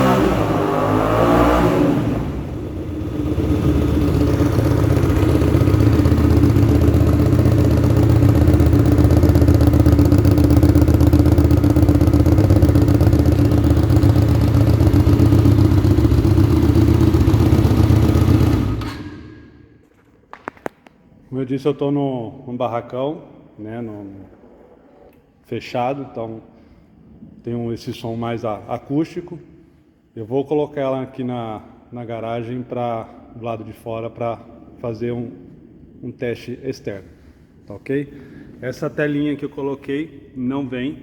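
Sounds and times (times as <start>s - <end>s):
motorcycle engine revving: 0.0s - 19.3s.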